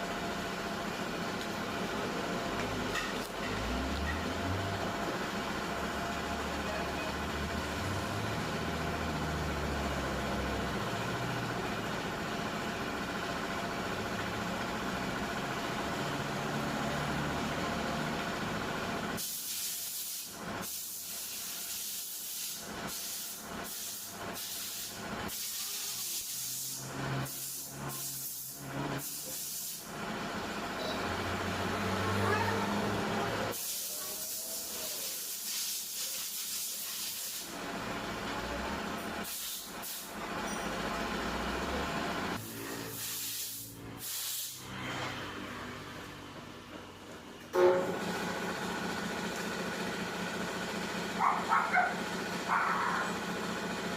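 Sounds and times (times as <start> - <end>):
compressed air hissing blasts: 19.2 - 29.9, 33.5 - 37.5, 39.2 - 40.2, 42.8 - 44.7.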